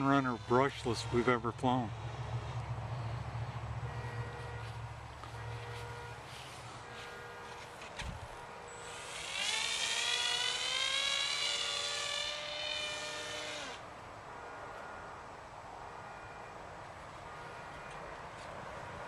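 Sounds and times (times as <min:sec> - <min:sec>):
electric motor and propeller whining: 0:00.0 - 0:13.9.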